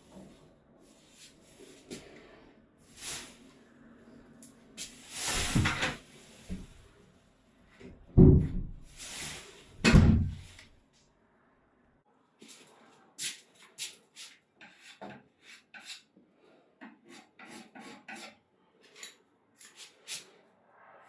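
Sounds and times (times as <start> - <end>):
filler knife scraping wood: 14.6 - 20.0.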